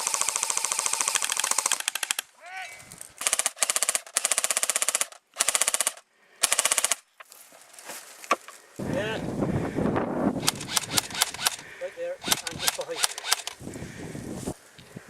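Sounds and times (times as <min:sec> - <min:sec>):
airsoft gun automatic bursts: 0:00.0 - 0:02.3, 0:03.2 - 0:07.0, 0:10.4 - 0:11.6, 0:12.2 - 0:13.6.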